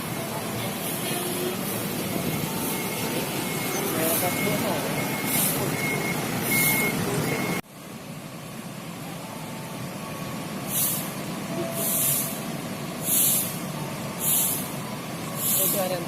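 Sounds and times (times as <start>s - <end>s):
bus air brakes hissing: 0.0s - 7.6s, 10.5s - 16.0s
short electronic beeps: 2.2s - 7.6s.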